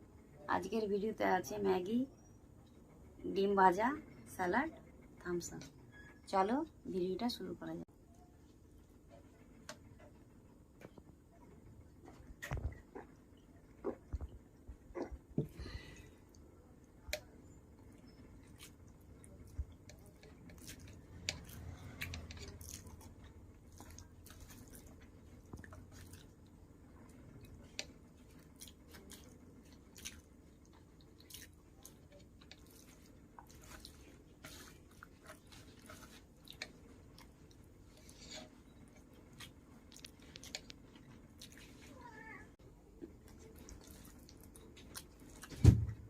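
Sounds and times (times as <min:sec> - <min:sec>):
person chewing food: 0:17.8 - 0:26.5, 0:27.3 - 0:41.8, 0:43.2 - 0:45.5.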